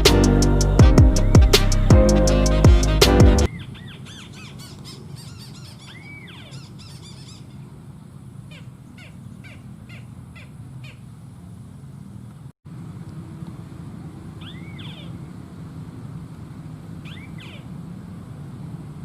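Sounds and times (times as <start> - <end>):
low outdoor background: 0.0 - 19.0
birds chirping and whistling: 3.5 - 7.6, 14.4 - 15.1, 17.1 - 17.7.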